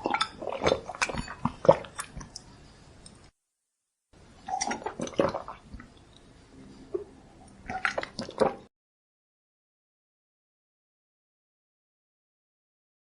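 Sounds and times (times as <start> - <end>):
person gulping water: 0.0 - 2.5, 4.4 - 6.0, 6.9 - 8.7.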